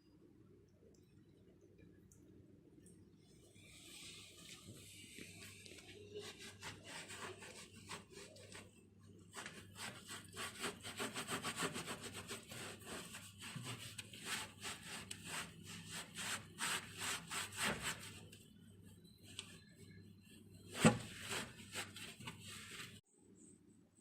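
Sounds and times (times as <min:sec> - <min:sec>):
scrubbing strokes on microwave: 0:03.9 - 0:08.7, 0:09.3 - 0:23.0.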